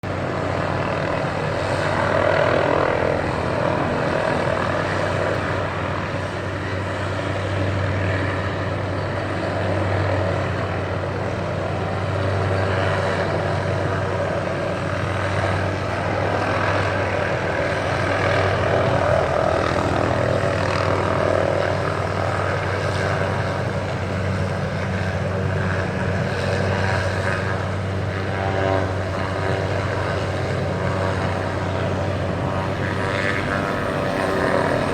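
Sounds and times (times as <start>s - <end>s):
helicopter hovering: 0.0s - 34.9s.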